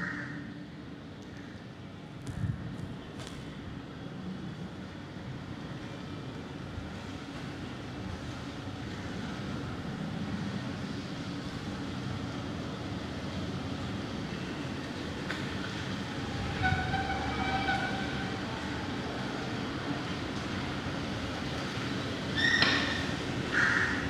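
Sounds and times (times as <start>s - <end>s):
rumble of passing vehicles: 0.0s - 24.0s
vehicle horn: 16.6s - 18.4s.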